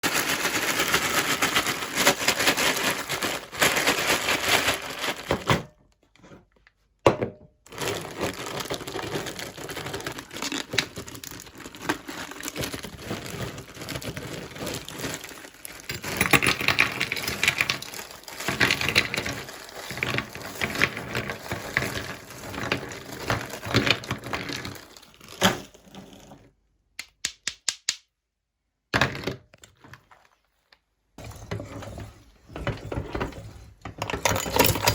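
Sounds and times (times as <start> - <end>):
meat grinder crushing ice: 0.0 - 5.3, 7.7 - 25.4.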